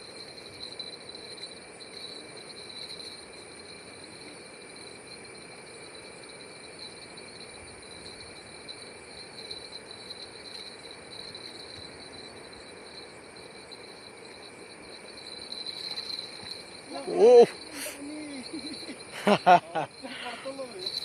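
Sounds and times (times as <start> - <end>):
crickets and night insects trilling: 0.0 - 21.0
soft hiss: 0.0 - 21.0.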